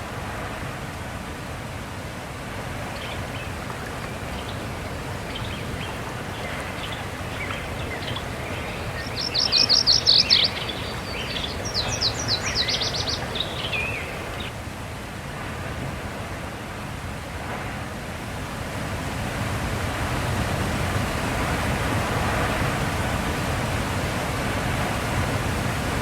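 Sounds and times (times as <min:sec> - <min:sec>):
steady background hiss: 0:01.5 - 0:14.6
songbird singing: 0:02.7 - 0:14.6
faint bird chirps: 0:02.9 - 0:14.5.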